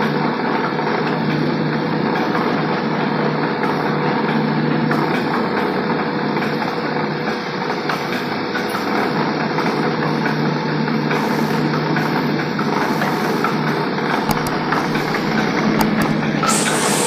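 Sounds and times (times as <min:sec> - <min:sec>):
milling machinery clatter: 0:00.2 - 0:17.0
electric motor hum: 0:14.2 - 0:17.0.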